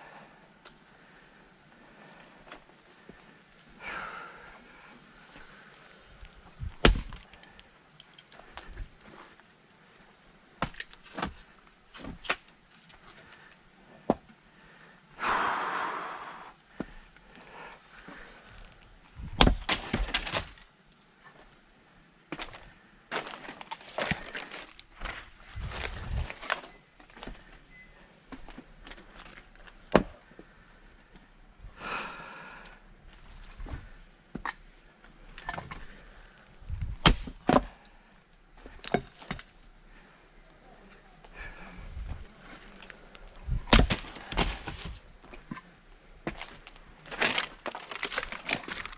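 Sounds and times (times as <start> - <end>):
heavy breath: 0.0 - 5.9, 14.5 - 18.7, 30.2 - 32.9, 41.2 - 42.7
knocks of split wood: 6.7 - 7.3, 19.3 - 20.6, 37.0 - 37.7, 43.7 - 45.6
axe striking a log: 6.8 - 7.2, 19.3 - 20.5, 37.0 - 37.7, 43.7 - 44.9
breathy exhale: 14.7 - 18.4, 31.7 - 32.8.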